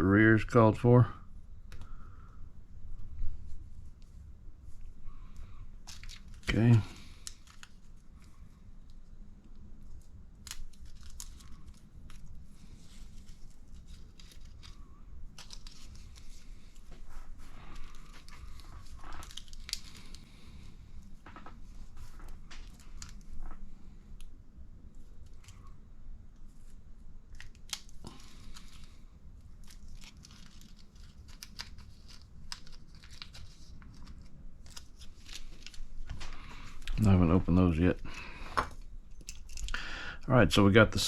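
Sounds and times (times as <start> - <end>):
plastic bags crinkling: 5.8 - 8.4, 9.9 - 23.7, 27.3 - 39.8.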